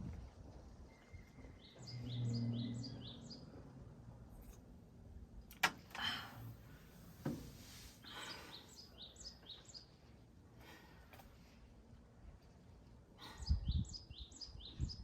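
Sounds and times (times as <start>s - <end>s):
low hum: 0.0s - 8.3s
songbird chirping: 0.7s - 3.9s, 8.0s - 10.2s, 13.5s - 15.0s.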